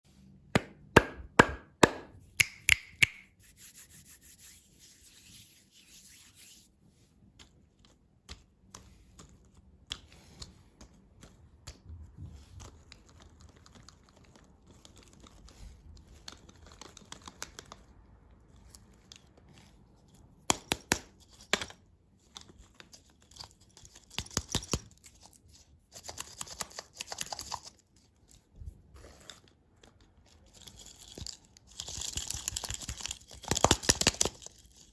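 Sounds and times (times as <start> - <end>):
sharp clicks and taps: 0.6 - 3.3.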